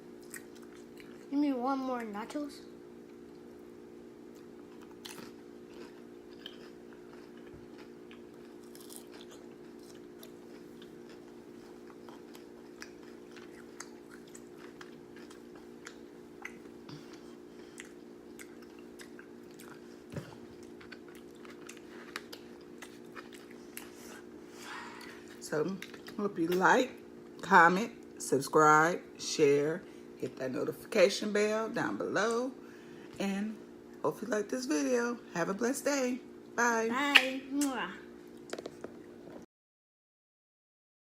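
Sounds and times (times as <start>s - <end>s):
steady low hum: 0.0s - 39.4s
crunchy chewing of chips: 0.1s - 1.3s, 4.2s - 26.2s.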